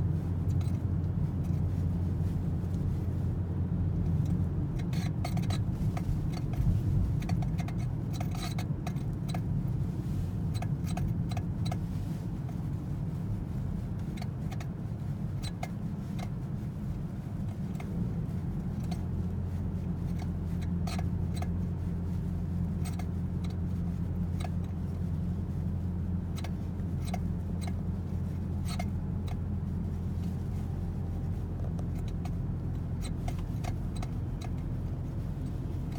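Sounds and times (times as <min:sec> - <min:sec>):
car running hum: 0:00.0 - 0:35.9
steering squeaks: 0:18.7 - 0:35.9.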